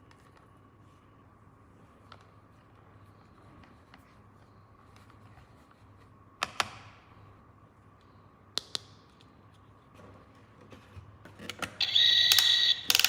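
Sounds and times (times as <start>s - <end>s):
faint steady hum: 0.0s - 13.0s
plastic toy pieces clicking: 12.2s - 13.0s.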